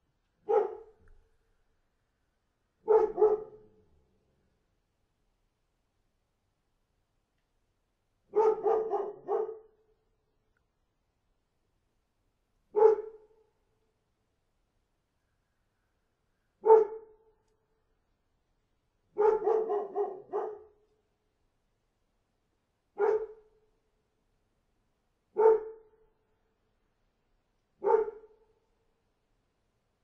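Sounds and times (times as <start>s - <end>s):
dog barking: 0.4s - 1.0s, 2.8s - 3.8s, 8.3s - 9.7s, 12.7s - 13.3s, 16.6s - 17.1s, 19.2s - 20.8s, 23.0s - 23.5s, 25.4s - 26.0s, 27.8s - 28.4s.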